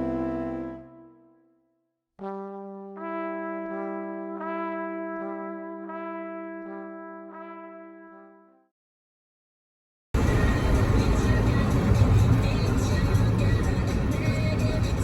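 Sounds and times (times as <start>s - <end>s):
brass quartet holding chords: 0.0s - 1.1s.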